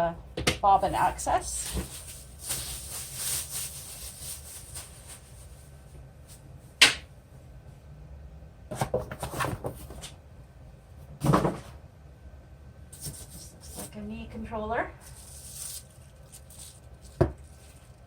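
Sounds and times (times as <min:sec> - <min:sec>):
packaging rustling and clatter: 0:01.4 - 0:05.7, 0:13.0 - 0:13.9, 0:15.0 - 0:18.0.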